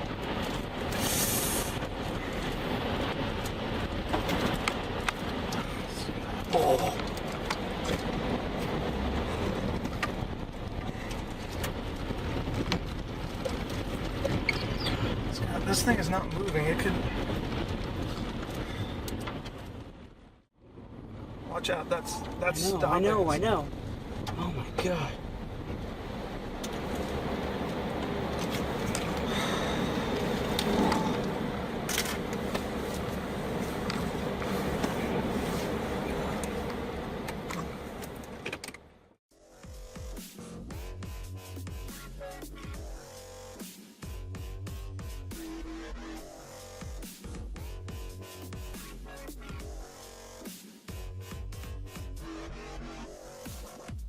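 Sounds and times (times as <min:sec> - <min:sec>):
strong wind rushing: 0:00.0 - 0:38.4
car road and cabin rumble: 0:00.0 - 0:39.2.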